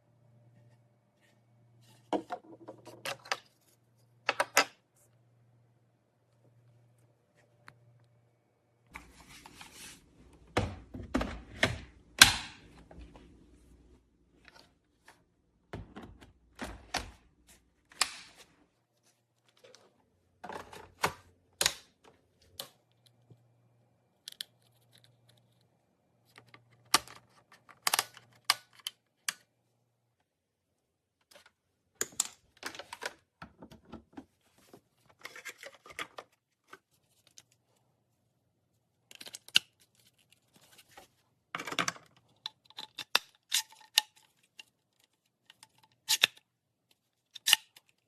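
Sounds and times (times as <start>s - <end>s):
plastic parts clicking and knocking: 4.2s - 4.8s, 31.2s - 34.3s, 41.5s - 46.5s.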